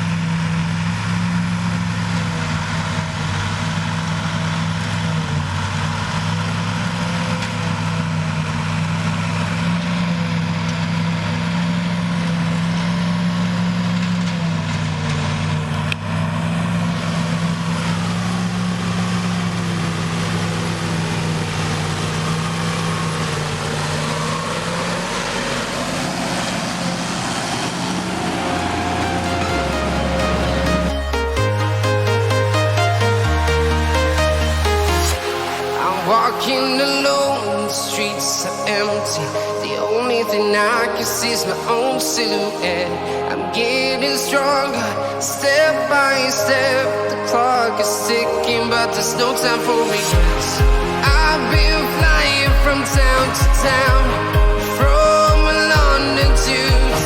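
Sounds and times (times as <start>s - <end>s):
tractor engine running under load: 0.0s - 31.5s.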